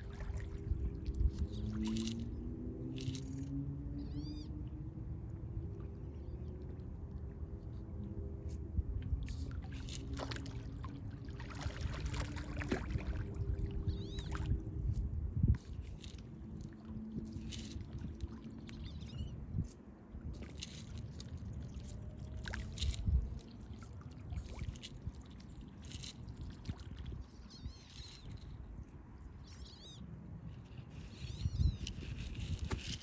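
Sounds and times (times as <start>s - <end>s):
small splashes and clicks: 0.0s - 3.6s, 9.0s - 28.7s
water splashing and lapping: 0.0s - 33.0s.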